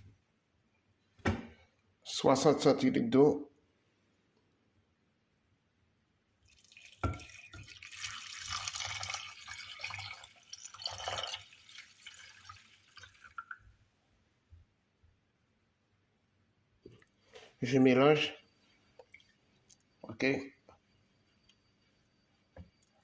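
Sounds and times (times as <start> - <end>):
water pouring into a saucepan: 6.4 - 13.7
water dripping: 6.4 - 13.8, 18.9 - 20.0.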